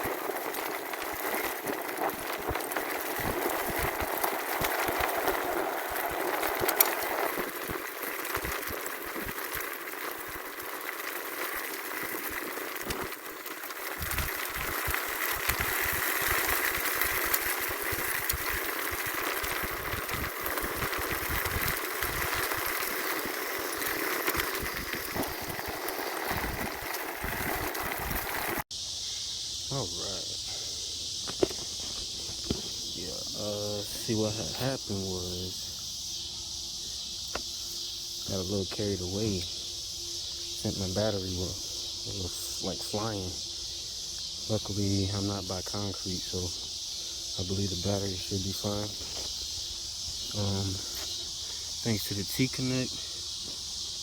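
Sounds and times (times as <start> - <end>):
electric motor whir: 0.0 - 28.6
tyre and rattle noise: 0.0 - 28.6, 31.2 - 36.2
wind buffeting microphone: 17.7 - 22.7, 24.6 - 28.6.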